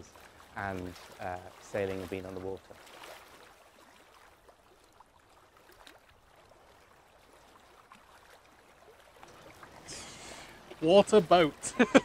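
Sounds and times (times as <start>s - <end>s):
faint water ambience: 0.0s - 12.0s.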